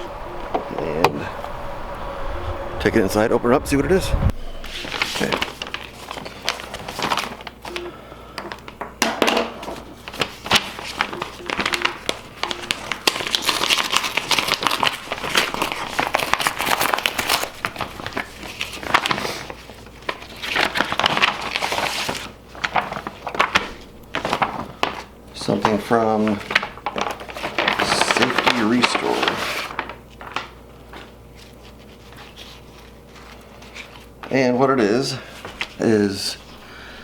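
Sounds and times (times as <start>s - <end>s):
package wrapping crinkling and tearing: 4.6s - 7.8s, 9.6s - 34.4s.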